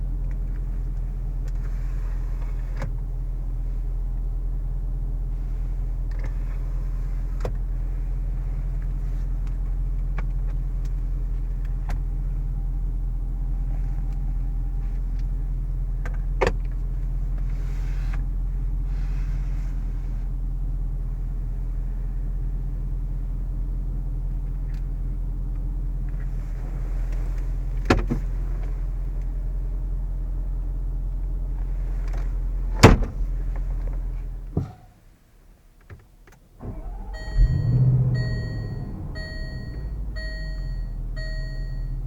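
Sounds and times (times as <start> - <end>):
car engine idling: 36.5 - 42.0.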